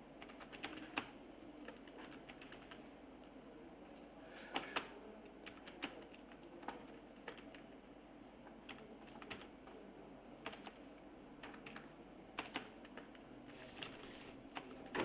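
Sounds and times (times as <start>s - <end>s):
computer keyboard typing: 0.2s - 2.8s, 4.5s - 7.6s, 8.6s - 9.8s, 10.4s - 10.8s, 11.4s - 13.2s.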